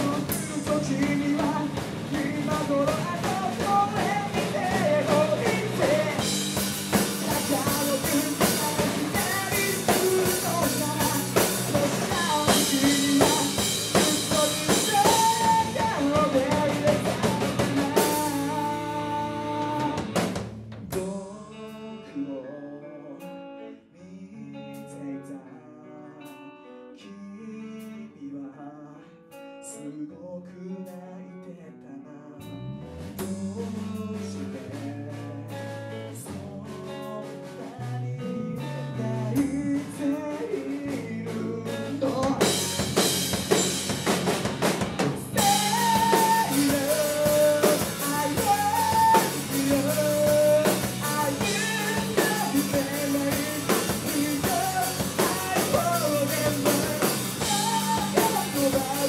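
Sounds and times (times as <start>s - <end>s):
person singing: 0.0s - 20.2s, 20.9s - 32.6s, 33.2s - 44.1s, 45.0s - 59.0s
live rock band playing: 0.0s - 22.2s, 32.7s - 59.0s.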